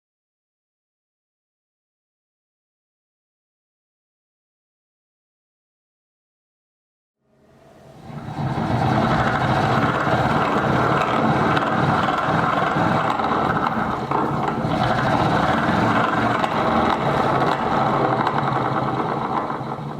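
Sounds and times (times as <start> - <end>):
hand-cranked grinder whirring: 8.0 - 19.9.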